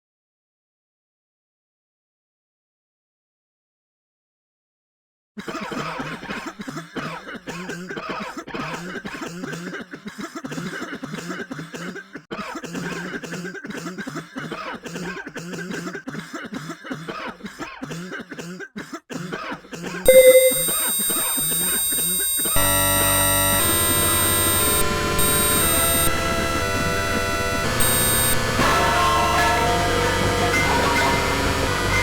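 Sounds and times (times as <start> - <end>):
person coughing: 5.4 - 20.0
music and electronic noise: 22.2 - 32.0.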